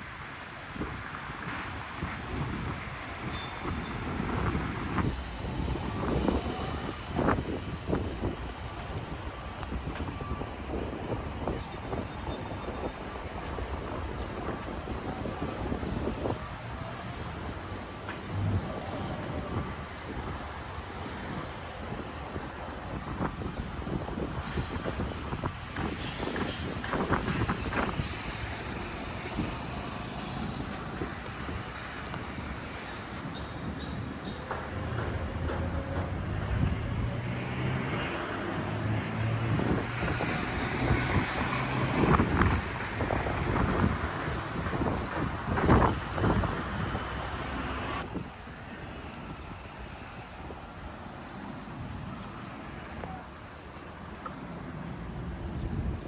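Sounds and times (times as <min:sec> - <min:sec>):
low street rumble: 0:00.0 - 0:23.1, 0:24.4 - 0:48.1
wind buffeting microphone: 0:00.0 - 0:49.6
vehicle engine running: 0:26.8 - 0:41.0.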